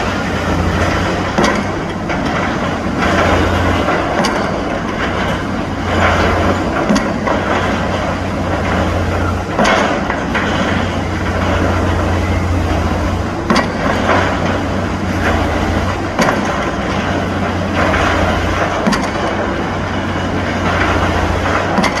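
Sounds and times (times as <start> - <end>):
pile driver engine humming: 0.0 - 22.0
hammer striking pile: 13.4 - 22.0.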